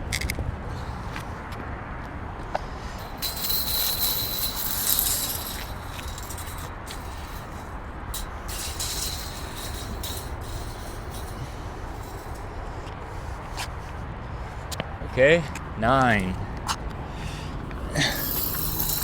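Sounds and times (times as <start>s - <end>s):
hissing bursts: 3.0s - 12.4s.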